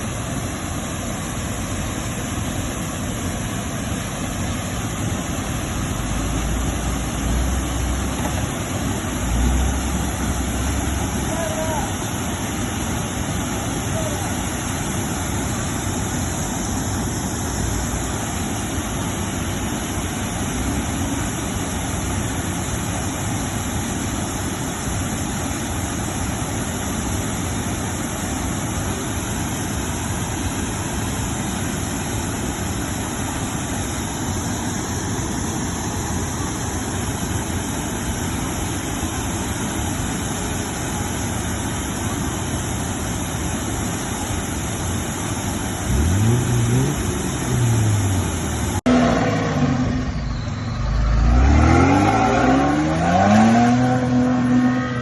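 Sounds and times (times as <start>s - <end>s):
vehicle engine running low revs: 45.7s - 55.0s.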